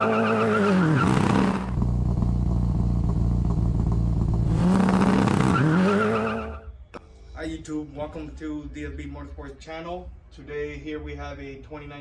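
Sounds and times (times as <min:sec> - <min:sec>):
car engine idling: 0:00.0 - 0:06.5.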